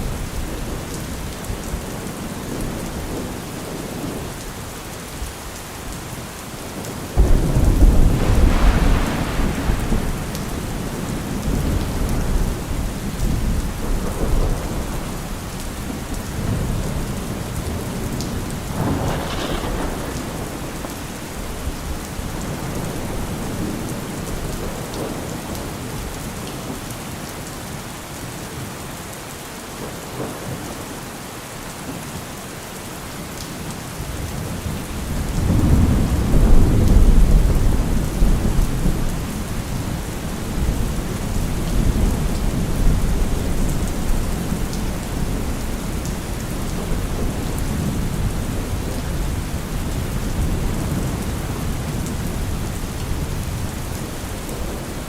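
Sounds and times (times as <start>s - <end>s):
steady rain: 0.0s - 55.0s
thunder rumbling and cracking: 7.2s - 25.8s, 34.2s - 55.0s.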